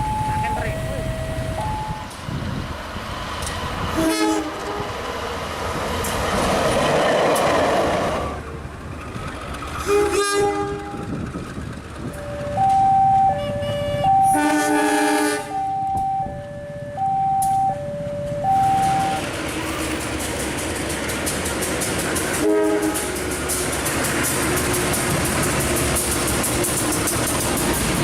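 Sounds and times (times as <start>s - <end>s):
two-tone warning signal: 0.0s - 2.2s, 12.2s - 19.2s
passing train rolling noise: 0.0s - 28.0s
locomotive horn blasts: 3.9s - 4.9s, 9.8s - 11.1s, 12.3s - 17.7s, 22.4s - 23.3s.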